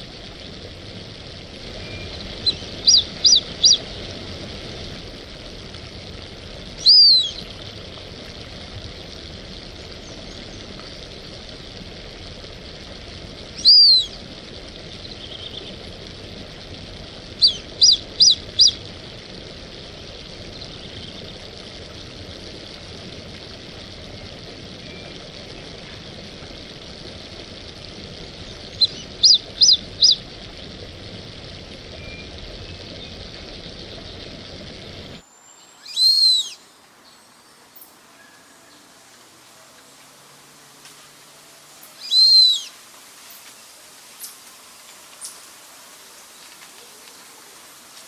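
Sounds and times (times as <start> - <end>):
steady hiss: 0.0 - 48.0
duck whistling calls: 1.8 - 3.9, 6.8 - 7.5, 13.6 - 14.2, 17.4 - 18.8, 28.8 - 30.2, 35.8 - 36.6, 42.0 - 42.8.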